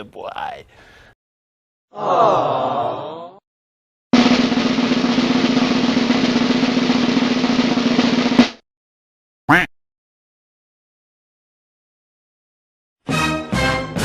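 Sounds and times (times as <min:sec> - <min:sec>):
snare drum roll: 0:04.2 - 0:08.6.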